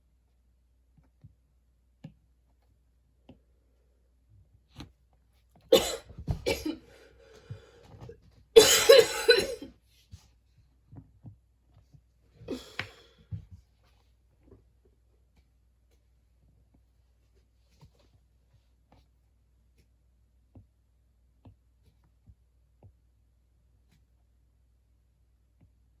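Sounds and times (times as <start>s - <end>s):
person coughing: 5.7s - 6.9s, 8.6s - 9.7s, 12.5s - 13.1s.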